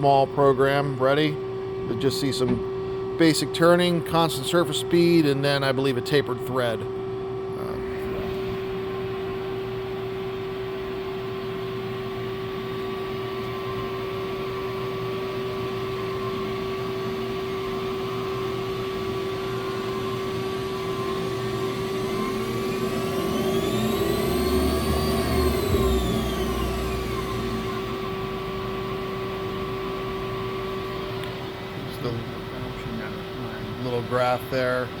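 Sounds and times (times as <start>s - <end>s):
spindle whine: 6.6s - 35.0s
lathe machine hum: 7.7s - 35.0s.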